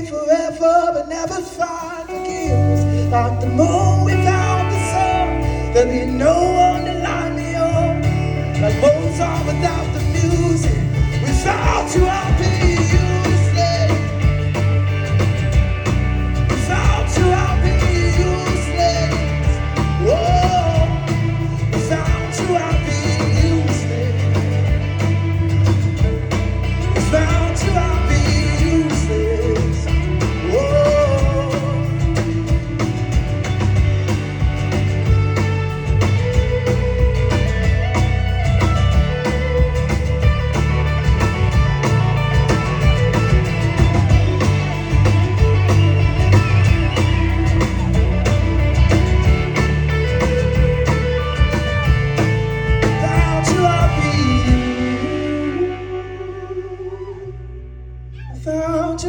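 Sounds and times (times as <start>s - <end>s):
person singing wordless vocals: 0.0s - 14.4s, 16.5s - 24.8s, 26.8s - 32.9s, 52.8s - 59.0s
live band playing: 0.0s - 57.6s.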